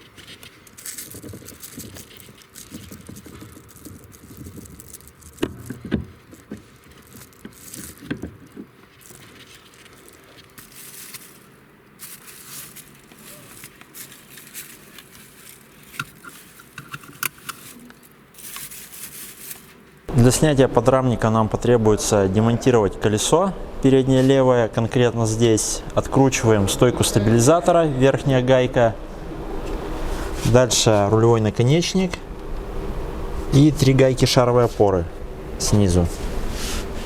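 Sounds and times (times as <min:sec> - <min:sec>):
tools and metal fasteners clinking: 0:00.0 - 0:19.8.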